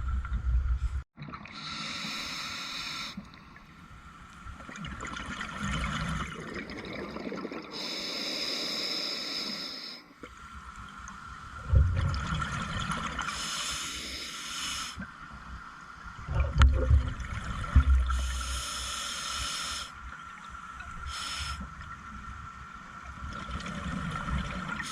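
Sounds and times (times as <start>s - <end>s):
regulator hissing inhalations: 1.6s - 3.2s, 7.8s - 10.2s, 13.3s - 15.0s, 18.1s - 20.0s, 21.1s - 21.7s
exhaled bubbles rumbling: 4.6s - 7.8s, 11.6s - 13.3s, 16.2s - 18.4s.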